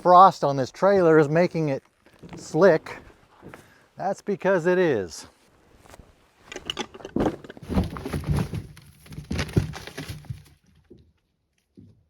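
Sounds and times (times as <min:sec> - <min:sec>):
log thumping and scraping: 0:00.7 - 0:03.8, 0:05.7 - 0:12.0.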